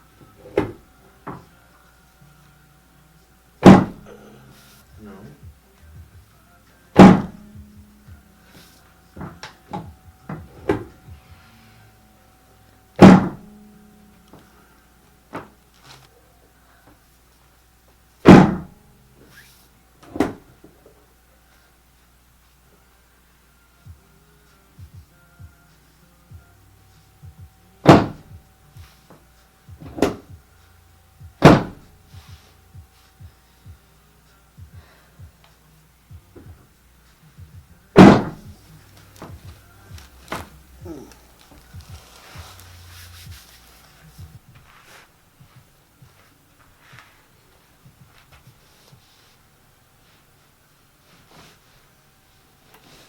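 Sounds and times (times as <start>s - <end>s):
drop table sections thunking: 3.6s - 4.0s, 13.0s - 13.4s, 31.4s - 31.9s, 38.0s - 38.5s
table slamming with loud thunks: 3.6s - 4.1s, 7.0s - 7.4s, 9.2s - 11.0s, 13.0s - 13.5s, 18.2s - 18.8s, 20.1s - 20.5s, 27.8s - 28.3s, 29.8s - 30.3s, 31.4s - 31.9s, 38.0s - 38.5s.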